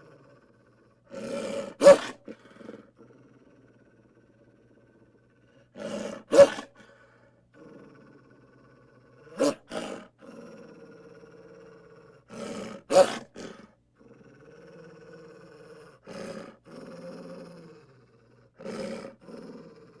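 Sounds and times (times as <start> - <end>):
wolf snarling: 1.0 - 4.8, 5.5 - 17.9, 18.5 - 20.0
wolf growling low: 7.5 - 20.0.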